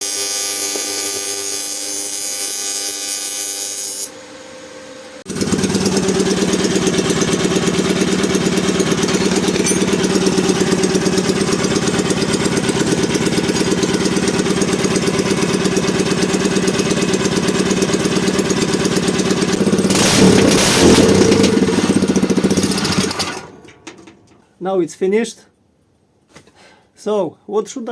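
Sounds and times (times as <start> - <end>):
machine hum: 4.2 - 24.4
small engine running: 5.2 - 23.7.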